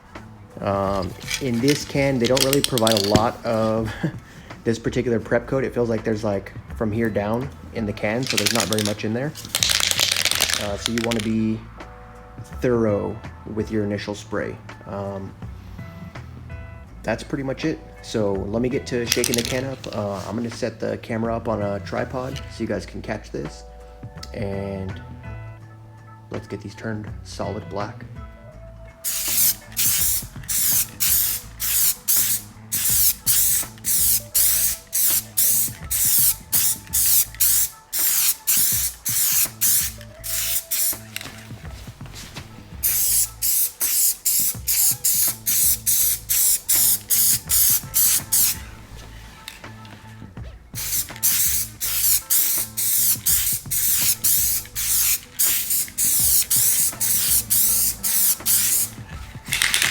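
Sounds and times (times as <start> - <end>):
aerosol spray can bursts: 0.8 - 3.8, 8.2 - 11.4, 19.1 - 20.6, 29.0 - 48.7, 50.8 - 59.9.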